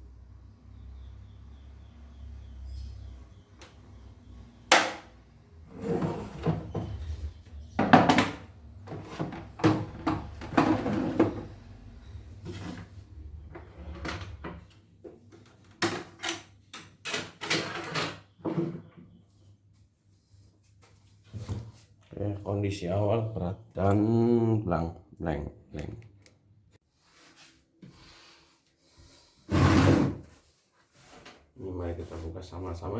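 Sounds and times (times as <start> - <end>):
hard parts knocking and rattling: 7.8 - 11.6.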